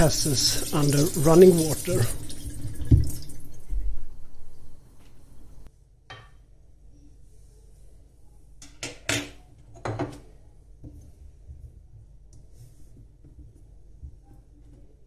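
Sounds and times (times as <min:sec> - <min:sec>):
running tap water: 0:00.0 - 0:05.7.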